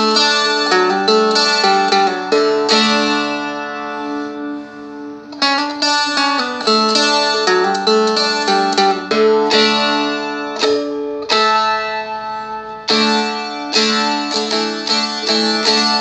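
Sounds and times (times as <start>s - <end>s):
strummed string chords: 0.0s - 16.0s.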